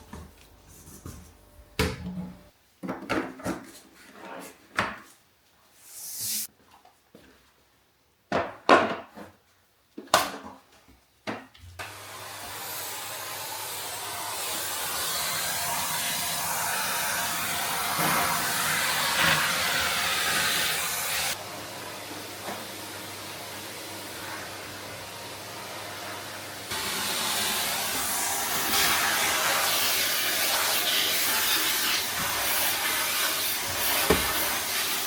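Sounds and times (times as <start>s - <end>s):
vacuum cleaner running: 11.8s - 35.0s.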